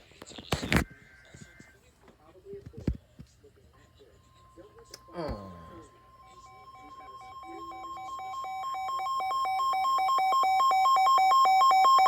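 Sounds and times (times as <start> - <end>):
weather radio warning alarm: 4.3 - 12.0.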